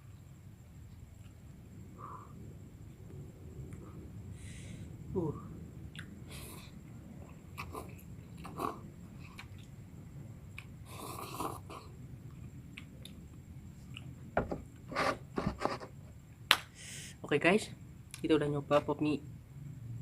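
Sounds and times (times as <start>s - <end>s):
sharp knocks: 14.4s - 14.6s.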